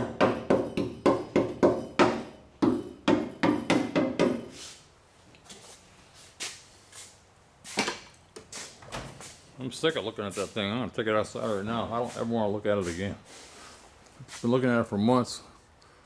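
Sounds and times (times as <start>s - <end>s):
rapid ringing knocks: 0.0s - 4.5s.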